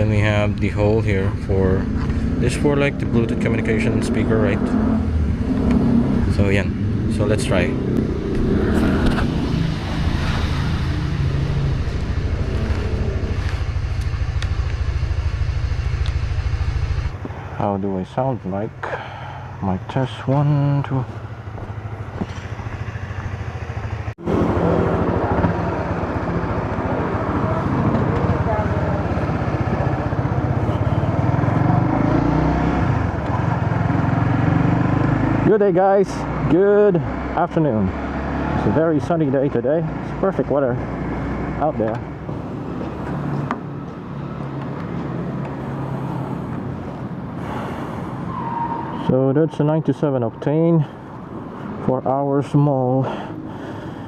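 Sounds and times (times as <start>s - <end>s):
motorcycle engine running: 0.0s - 17.3s, 20.5s - 37.3s
motorcycle engine idling: 11.2s - 17.3s, 18.8s - 31.4s.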